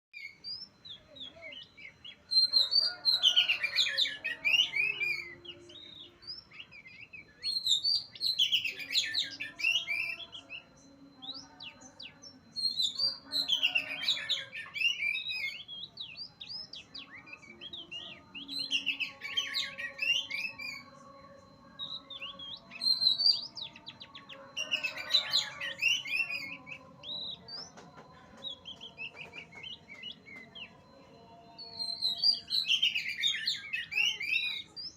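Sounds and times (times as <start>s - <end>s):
songbird whistling and chattering: 0.2s - 10.7s, 11.3s - 20.9s.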